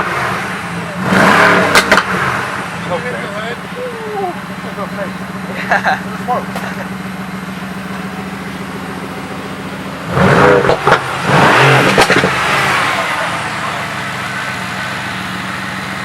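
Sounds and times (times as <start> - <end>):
car engine idling and revving: 0.0 - 16.0
exhaust cracks: 0.0 - 16.0.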